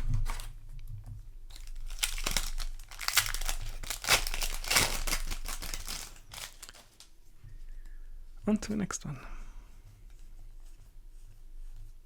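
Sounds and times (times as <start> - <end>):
plastic wrapper crinkling and tearing: 0.0 - 7.2.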